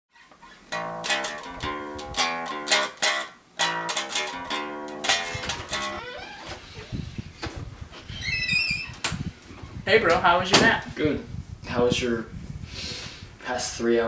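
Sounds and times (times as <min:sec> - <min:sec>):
strummed string instrument chords: 0:00.7 - 0:06.0.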